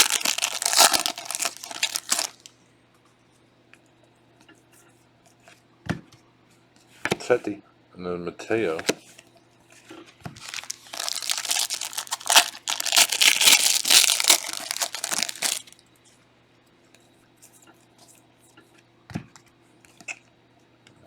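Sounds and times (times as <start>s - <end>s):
plastic wrapper tearing and crinkling: 0.0s - 2.5s, 10.4s - 15.8s.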